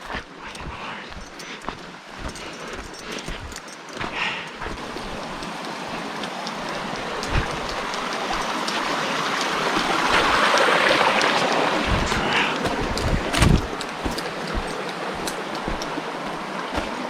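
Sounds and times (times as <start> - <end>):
creek water rushing over rocks: 0.0 - 17.0
low thumps: 11.9 - 14.8.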